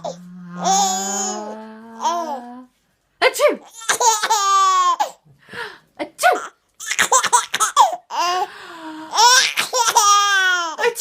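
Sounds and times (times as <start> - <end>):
baby laughing: 3.7 - 5.2, 6.4 - 8.4, 9.1 - 10.8.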